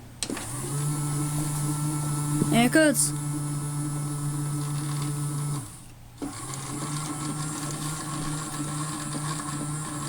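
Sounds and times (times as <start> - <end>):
toy washing machine motor whirring: 0.3 - 10.0.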